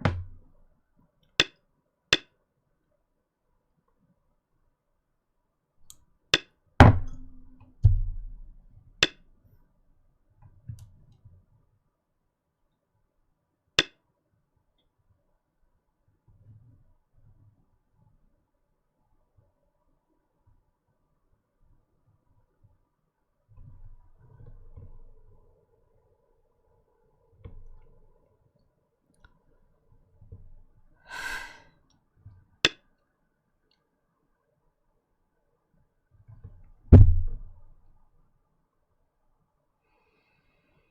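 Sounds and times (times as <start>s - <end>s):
low thud: 0.0s - 0.5s, 6.8s - 8.7s, 36.9s - 37.7s
sharp clicks and knocks: 0.0s - 0.5s, 6.4s - 9.2s
person sighing: 31.1s - 31.7s.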